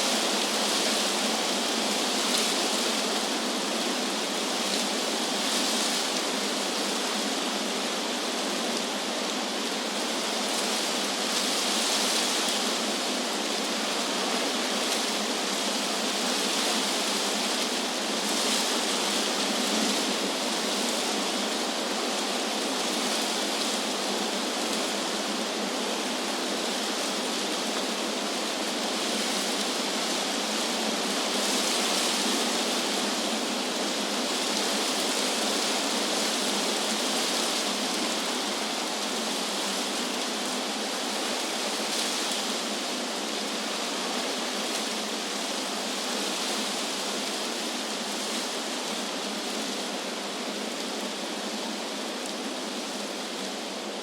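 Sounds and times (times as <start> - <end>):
wind rustling tree leaves: 0.0 - 54.0.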